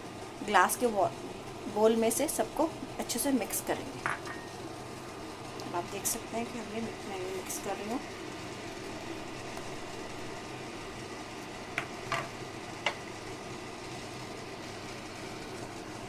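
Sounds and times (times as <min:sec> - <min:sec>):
steady background hum: 0:00.0 - 0:16.0
spoon clinking glass bowl: 0:04.1 - 0:04.5.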